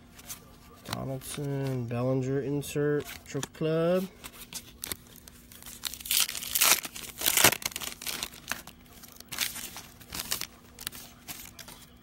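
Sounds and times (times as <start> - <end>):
cards being handled: 0.0 - 2.0, 2.8 - 12.0
foil wrapper tearing and crinkling: 4.6 - 11.8.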